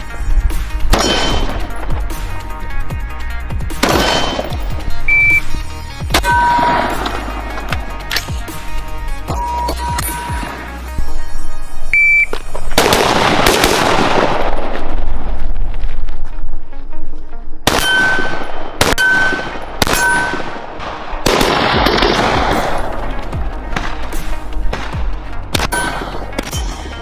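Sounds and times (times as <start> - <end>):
gunshots: 0.0 - 3.0, 3.6 - 10.9, 12.5 - 15.5, 17.6 - 27.0
gunshot echo: 0.8 - 2.4, 3.7 - 5.5, 6.1 - 8.5, 12.6 - 15.1, 17.7 - 27.0.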